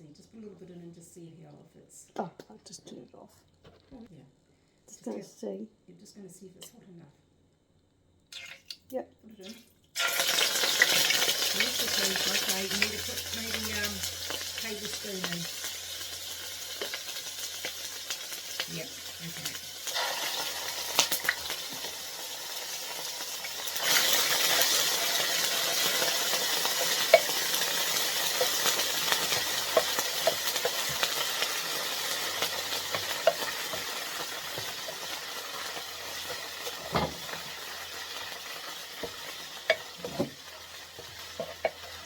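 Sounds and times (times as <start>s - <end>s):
food sizzling in oil: 9.5s - 42.0s.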